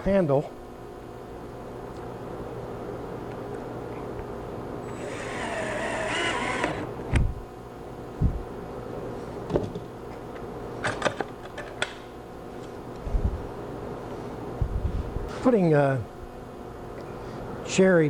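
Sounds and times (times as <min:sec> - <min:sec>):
power drill running: 0:04.8 - 0:07.0.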